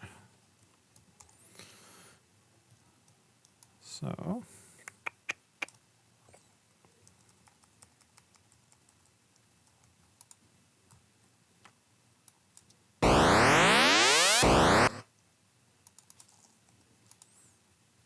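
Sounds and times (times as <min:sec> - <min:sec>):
computer keyboard and mouse clicks: 0:07.0 - 0:11.0, 0:15.8 - 0:17.3
synthesized rising sweep effect: 0:13.0 - 0:15.0.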